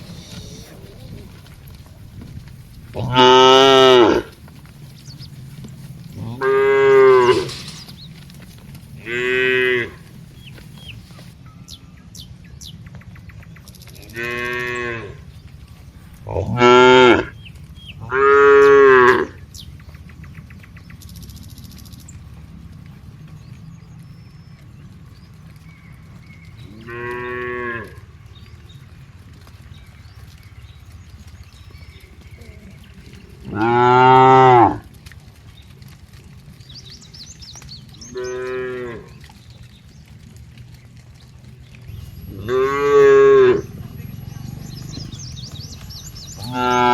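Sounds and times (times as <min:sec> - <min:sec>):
cows mooing: 0:00.0 - 0:01.8, 0:02.8 - 0:08.2, 0:08.9 - 0:11.2, 0:14.0 - 0:15.2, 0:16.2 - 0:17.4, 0:18.0 - 0:19.4, 0:26.6 - 0:28.3, 0:31.5 - 0:34.9, 0:37.9 - 0:39.4, 0:41.9 - 0:46.9.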